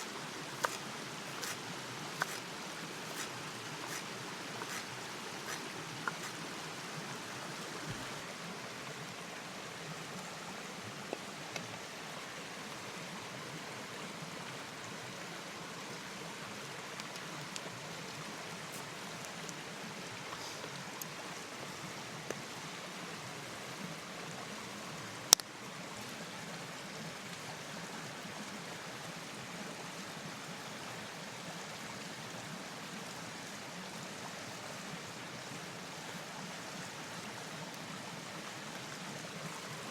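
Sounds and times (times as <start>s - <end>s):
rain hiss: 0.0s - 13.4s
flowing stream water: 0.0s - 39.9s
light ticks: 25.3s - 25.5s.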